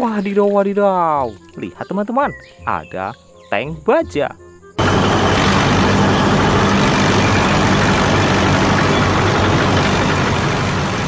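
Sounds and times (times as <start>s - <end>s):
tank engine rumbling: 4.8s - 11.0s.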